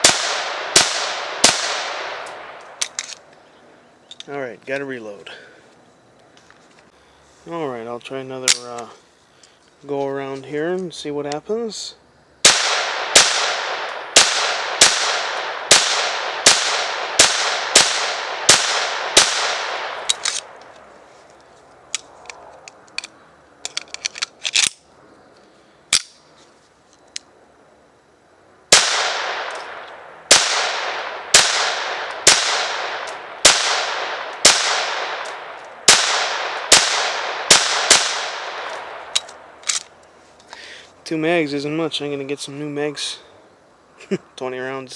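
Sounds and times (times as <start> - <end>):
pistol shots: 0.0 - 2.9, 12.4 - 20.6, 28.7 - 39.4.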